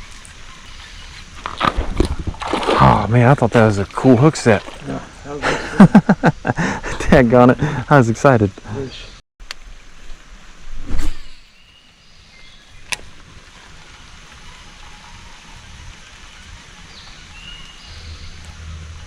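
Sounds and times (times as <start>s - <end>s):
creek water rushing: 1.6s - 5.7s.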